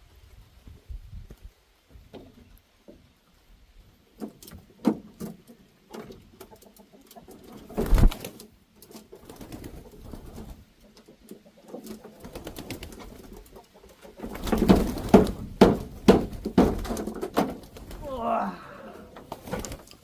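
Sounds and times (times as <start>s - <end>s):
chickens clucking: 5.3s - 18.0s.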